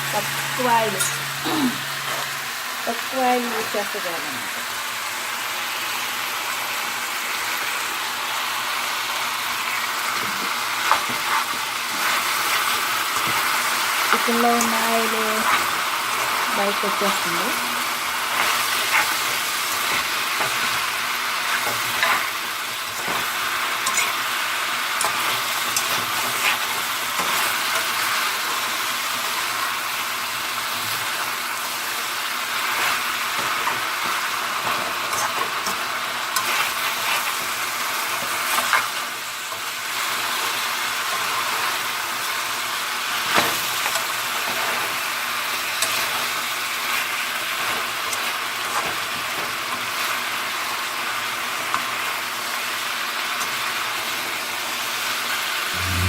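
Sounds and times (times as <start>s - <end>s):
spatula scraping a pan: 0.0s - 3.0s
chicken sizzling in a pan: 0.0s - 56.0s.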